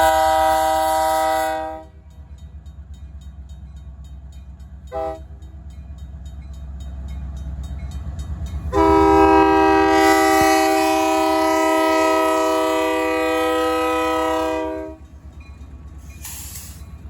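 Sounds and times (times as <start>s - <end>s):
locomotive horn blasts: 0.0s - 2.0s, 4.9s - 5.3s, 8.7s - 15.1s.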